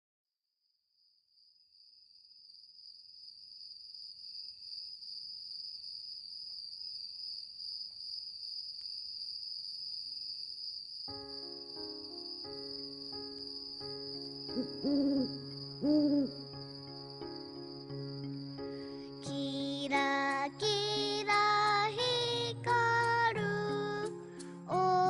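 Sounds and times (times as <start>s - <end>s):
high-pitched insect-like trill: 6.8s - 25.0s.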